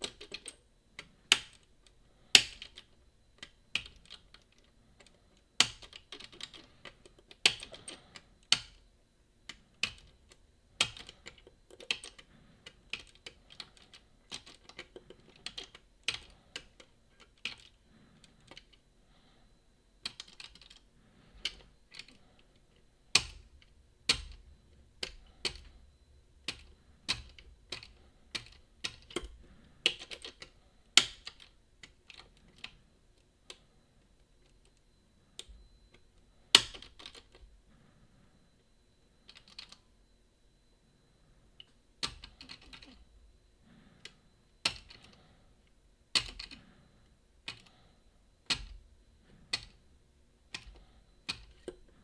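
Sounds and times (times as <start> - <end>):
lock picks clicking and tapping: 0.0 - 8.8, 9.5 - 18.8, 20.0 - 25.8, 26.4 - 32.8, 35.4 - 37.5, 39.2 - 39.8, 41.6 - 43.0, 44.0 - 45.2, 46.1 - 46.6, 47.4 - 47.7, 48.4 - 49.8, 50.5 - 52.0.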